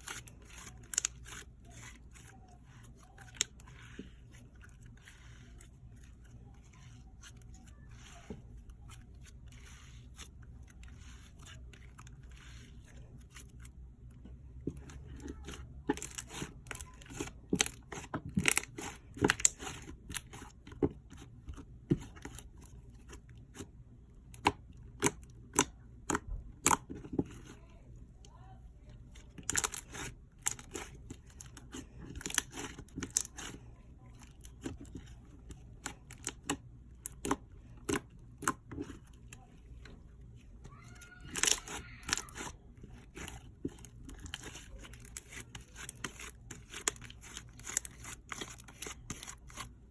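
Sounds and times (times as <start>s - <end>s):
slime squished by hand: 40.6s - 49.9s.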